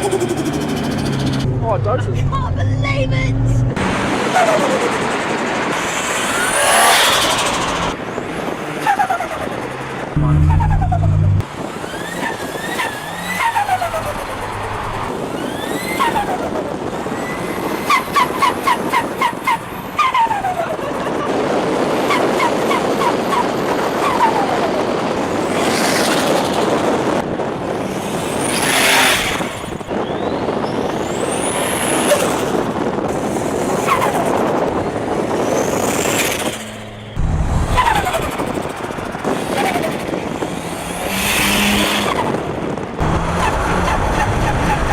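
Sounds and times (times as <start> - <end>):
car engines revving: 0.0 - 44.9
rapid chattering turbo flutter: 36.0 - 40.2.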